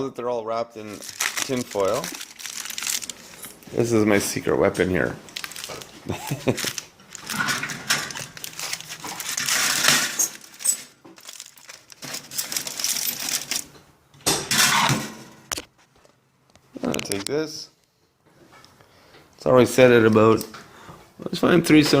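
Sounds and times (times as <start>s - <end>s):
foil crinkling: 0.8s - 3.5s, 5.2s - 13.7s
metal clinking: 9.9s - 13.6s.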